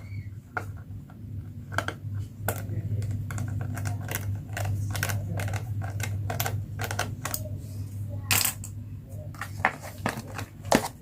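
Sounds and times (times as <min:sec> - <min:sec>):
steady low hum: 0:00.0 - 0:11.0
plastic toys clicking: 0:01.7 - 0:07.4.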